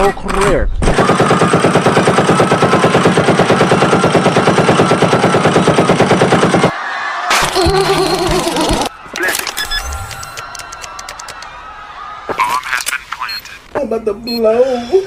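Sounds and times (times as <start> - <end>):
automatic machine-gun fire: 0.8 - 6.7.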